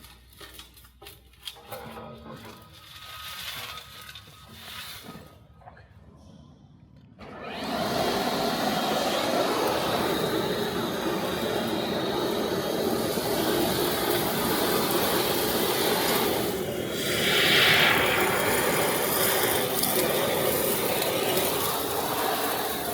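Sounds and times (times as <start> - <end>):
industrial vacuum blower rushing: 7.2 - 22.9
loud high hiss: 7.4 - 22.9.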